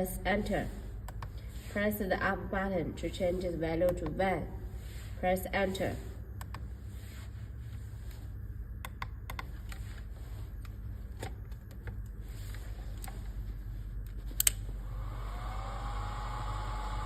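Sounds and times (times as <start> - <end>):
low hum: 0.0 - 17.0
motor whine ramping up: 14.7 - 17.0.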